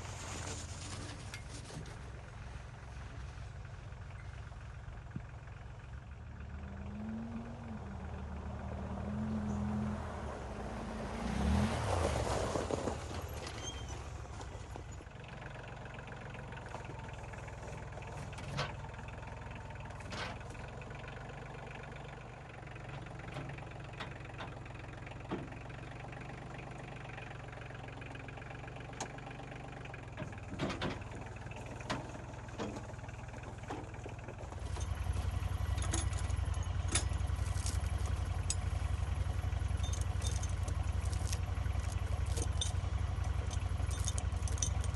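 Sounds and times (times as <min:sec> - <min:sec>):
tractor engine running: 0:00.0 - 0:44.9
knocks and clanks: 0:30.2 - 0:32.9.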